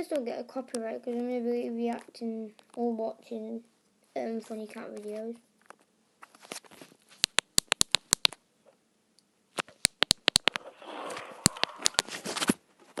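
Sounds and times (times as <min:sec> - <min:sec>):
rustling: 0:04.2 - 0:07.4, 0:10.5 - 0:13.0
sharp clicks: 0:07.2 - 0:08.4, 0:09.6 - 0:12.5.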